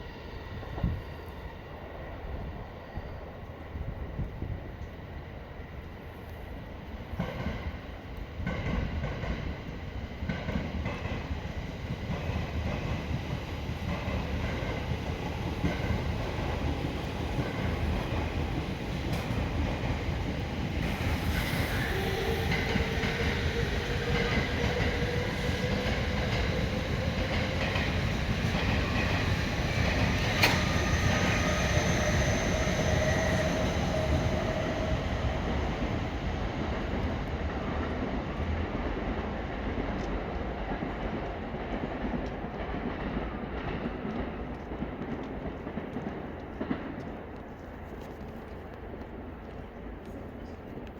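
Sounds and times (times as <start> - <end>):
train rumbling and clattering: 0.0 - 50.9
squealing wheels: 28.7 - 35.2.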